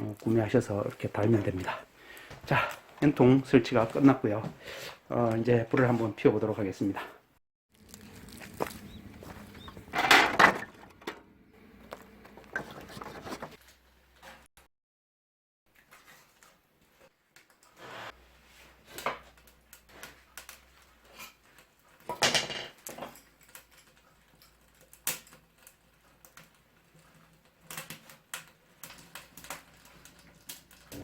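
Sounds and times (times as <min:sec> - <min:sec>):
rustling and scraping: 0:07.8 - 0:14.5
firewood and stove clicks and knocks: 0:07.9 - 0:11.3, 0:18.8 - 0:31.0.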